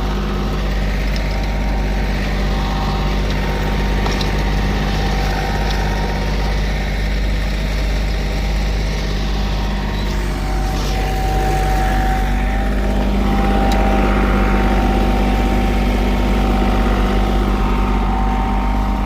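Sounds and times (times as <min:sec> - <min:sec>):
diesel paving machinery running: 0:00.0 - 0:19.0.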